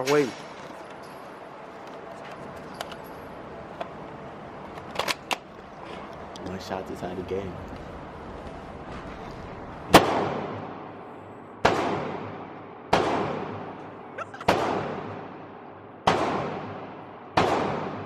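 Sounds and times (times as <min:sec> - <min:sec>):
pistol shots echoing: 0:11.6 - 0:18.0.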